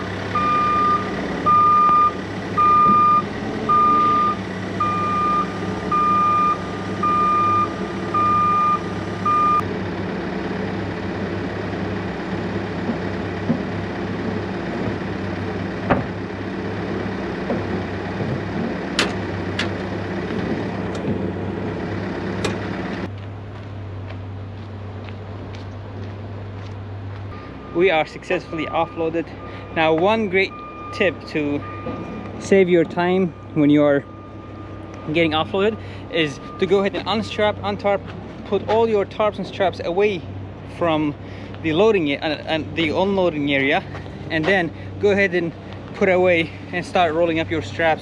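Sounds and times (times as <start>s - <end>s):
reversing alarm beeping: 0.0s - 9.7s, 27.3s - 37.7s
engine running: 0.0s - 48.0s
sharp knocks: 12.8s - 15.0s, 15.8s - 16.2s.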